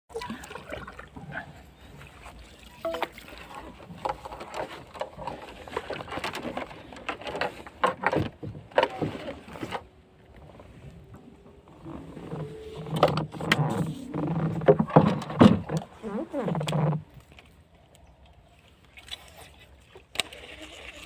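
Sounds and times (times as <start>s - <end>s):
splashing and knocking in water: 0.1s - 9.9s.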